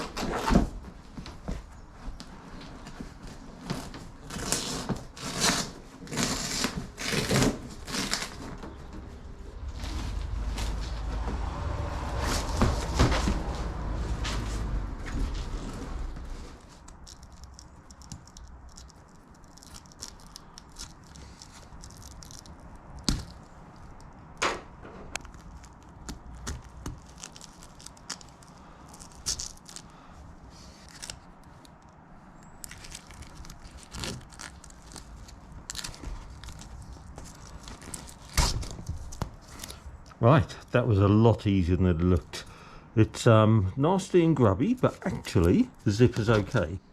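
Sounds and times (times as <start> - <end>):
plastic and fabric rustling: 0.0 - 24.3, 25.1 - 40.0
low rumble: 9.2 - 16.4.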